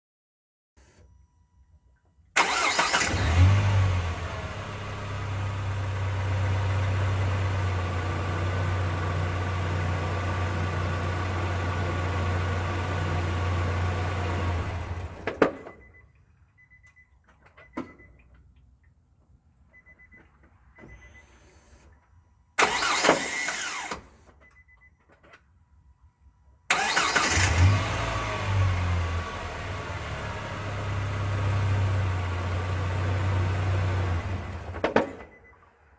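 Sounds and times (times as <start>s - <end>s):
faint beeps: 1.0s - 2.0s, 15.7s - 18.3s, 19.6s - 22.5s
car engine starting and idling: 2.4s - 15.9s, 22.6s - 24.3s, 26.7s - 35.7s.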